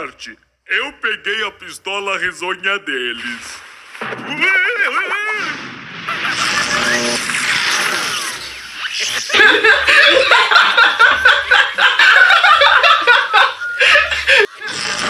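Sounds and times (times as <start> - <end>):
cartoon characters laughing: 6.1 - 15.0.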